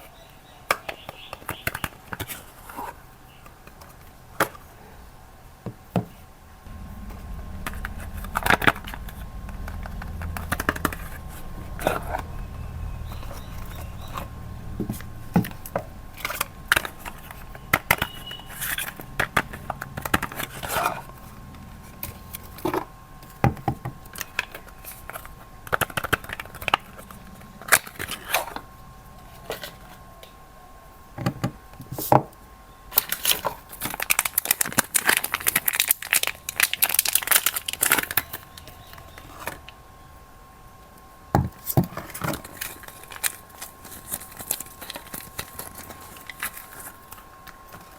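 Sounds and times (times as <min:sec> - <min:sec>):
packaging tearing and crinkling: 0:33.0 - 0:38.7, 0:42.0 - 0:47.2.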